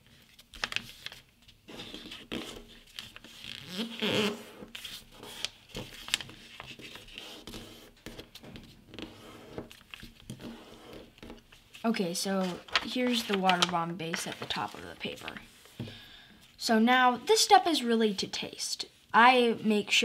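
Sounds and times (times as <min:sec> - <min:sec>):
paper rustling and crinkling: 0:00.0 - 0:15.6
paper folds clicking: 0:00.3 - 0:01.2, 0:04.8 - 0:08.4, 0:12.4 - 0:15.4.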